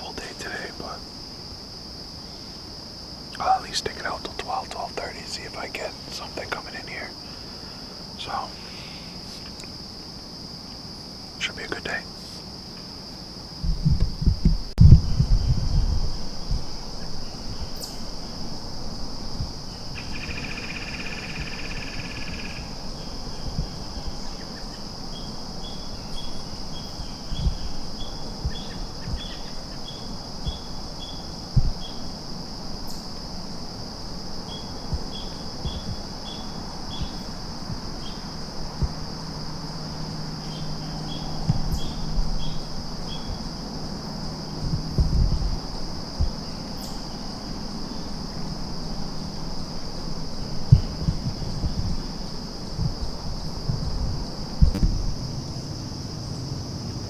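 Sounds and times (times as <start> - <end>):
faint low hum: 0.0 - 57.0
high-pitched insect chorus: 0.0 - 57.0
low thumps: 13.6 - 17.8, 27.0 - 29.3, 31.6 - 31.9, 34.8 - 36.1, 36.9 - 38.0, 38.6 - 39.1, 41.3 - 43.5, 44.6 - 46.4, 49.7 - 55.5
short evenly spaced chirps: 34.5 - 37.4.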